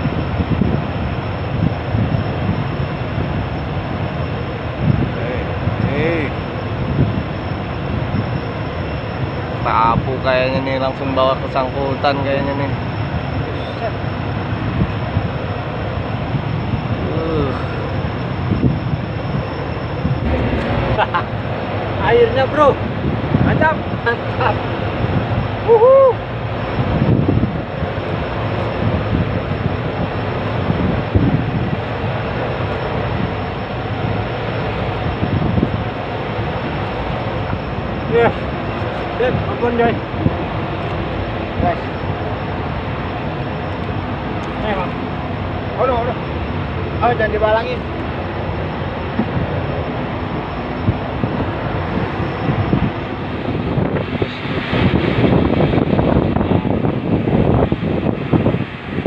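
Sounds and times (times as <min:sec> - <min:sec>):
wind at sea: 0:00.0 - 0:59.0
low rumble: 0:12.3 - 0:59.0.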